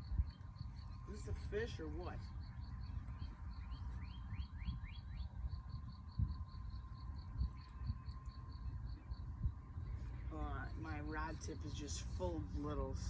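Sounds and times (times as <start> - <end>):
steady pulsing call: 0.0 - 12.9
low rumble: 0.0 - 13.0.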